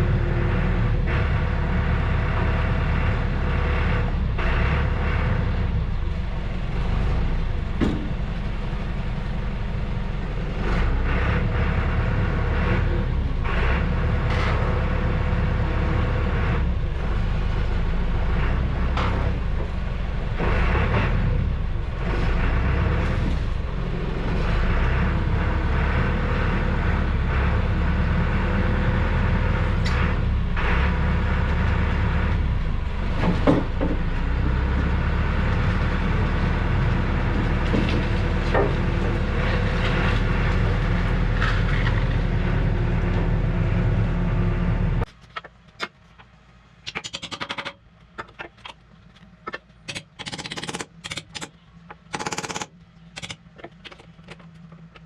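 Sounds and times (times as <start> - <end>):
sharp clicks and knocks: 7.7 - 8.3, 45.1 - 55.0.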